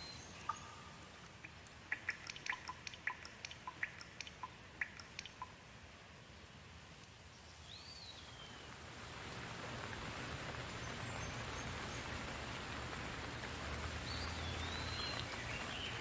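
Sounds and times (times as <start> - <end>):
rain hissing: 0.0 - 16.0
water drops dripping: 0.3 - 5.7.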